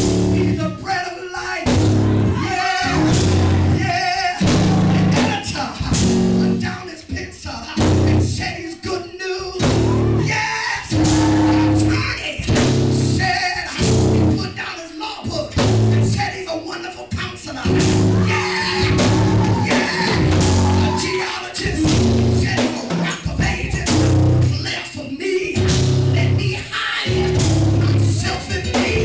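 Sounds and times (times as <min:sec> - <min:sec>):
live band music: 0:00.0 - 0:00.8, 0:01.6 - 0:06.8, 0:07.8 - 0:08.6, 0:09.6 - 0:14.6, 0:15.2 - 0:16.4, 0:17.0 - 0:29.0
person singing or calling: 0:00.4 - 0:05.7, 0:17.6 - 0:29.0.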